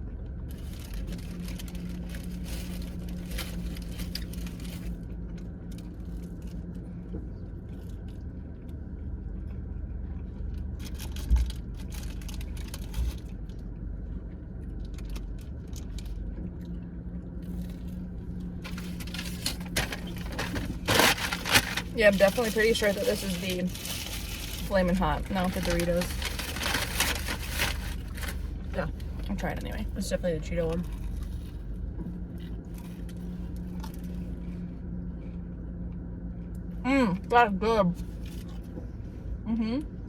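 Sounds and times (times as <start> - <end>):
car engine hum inside cabin: 0.0 - 40.0
wrapper rustling: 0.5 - 5.0, 18.6 - 29.0.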